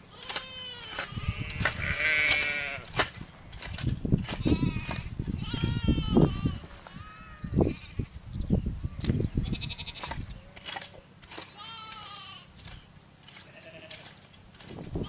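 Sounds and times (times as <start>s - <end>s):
sheep bleating: 0.1s - 2.9s, 4.4s - 8.2s, 9.4s - 10.1s, 11.6s - 12.5s, 13.5s - 14.0s.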